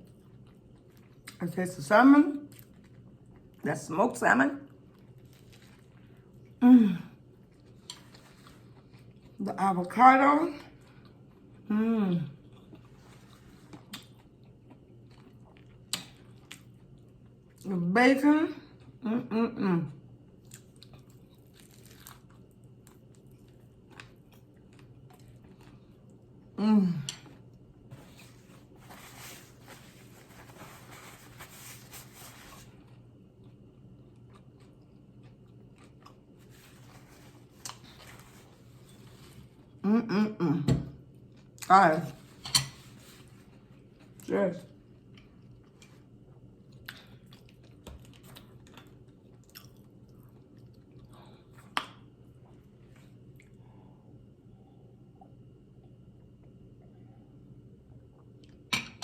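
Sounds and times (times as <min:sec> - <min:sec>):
crunchy chewing of sandwich: 0:00.0 - 0:01.4, 0:02.5 - 0:03.6, 0:04.7 - 0:06.6, 0:07.2 - 0:09.4, 0:12.3 - 0:17.6, 0:20.1 - 0:26.5, 0:27.2 - 0:39.8, 0:41.1 - 0:54.3.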